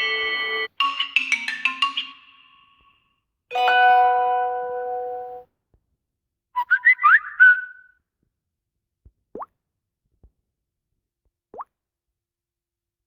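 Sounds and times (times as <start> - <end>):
bell-like tone: 3.5 - 5.4.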